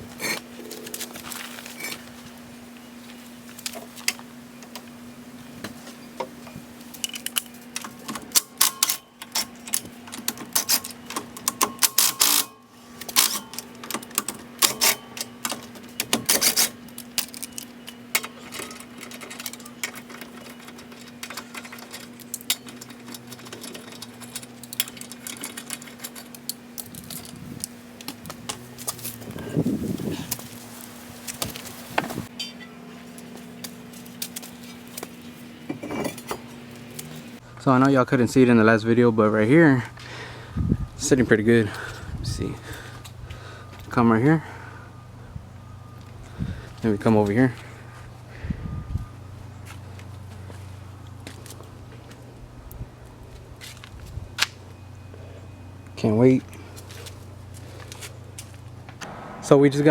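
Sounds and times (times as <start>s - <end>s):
steady low hum: 0.0s - 59.9s
metal tools clattering: 1.6s - 2.1s, 7.0s - 27.7s, 34.2s - 37.4s.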